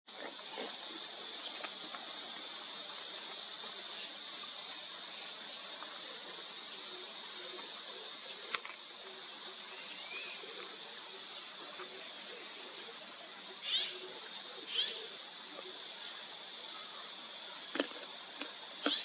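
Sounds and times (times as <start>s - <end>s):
high-pitched insect chorus: 0.1s - 19.0s
faint chirp: 6.6s - 17.1s
sharp click: 8.5s - 8.8s.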